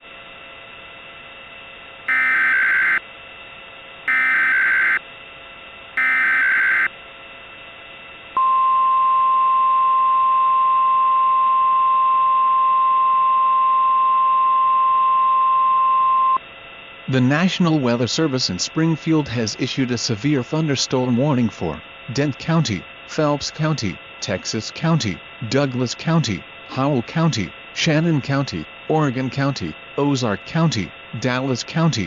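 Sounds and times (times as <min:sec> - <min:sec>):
steady warning alarm tone: 0:01.5 - 0:32.0
data tone bursts: 0:02.1 - 0:03.0, 0:04.1 - 0:05.0, 0:06.0 - 0:06.9
radio hiss: 0:17.1 - 0:32.0.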